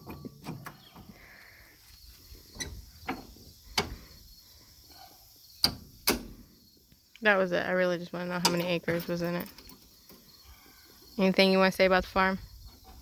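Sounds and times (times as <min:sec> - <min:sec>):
sharp clicks and knocks: 0:05.6 - 0:06.4.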